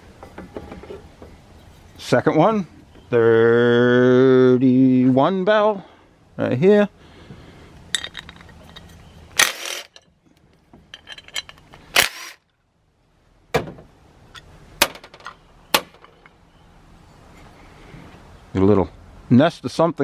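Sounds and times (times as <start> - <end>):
metal parts knocking and clinking: 7.9 - 10.2, 10.8 - 11.8.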